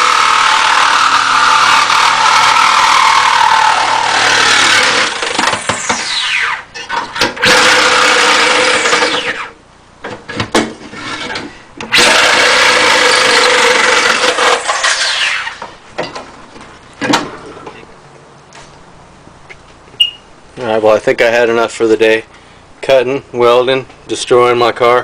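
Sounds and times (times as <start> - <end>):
reciprocating saw cutting sheet metal: 0.0 - 9.6, 11.0 - 15.7.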